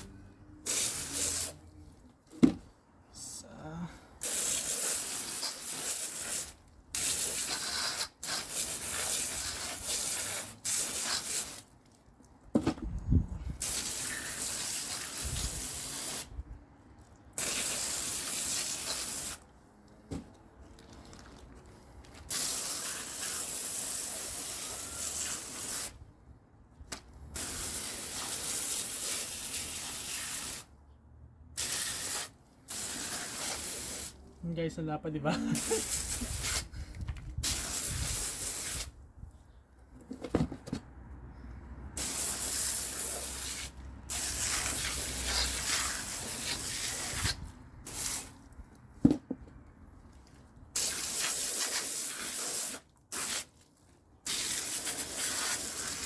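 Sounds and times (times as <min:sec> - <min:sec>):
running water spraying: 0:00.7 - 0:01.7, 0:04.2 - 0:11.6, 0:42.0 - 0:48.3, 0:50.8 - 0:53.6, 0:54.3 - 0:56.0.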